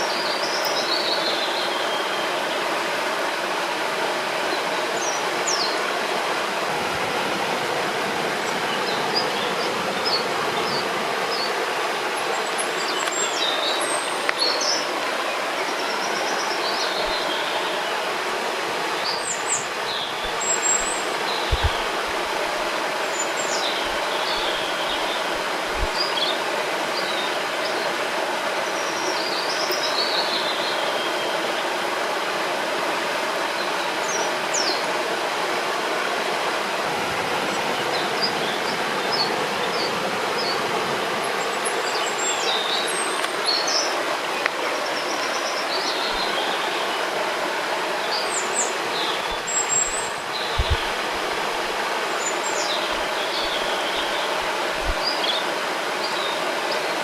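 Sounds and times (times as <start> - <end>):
river rushing over rocks: 0.0 - 57.0
small birds chirping: 19.0 - 26.4, 48.0 - 56.8.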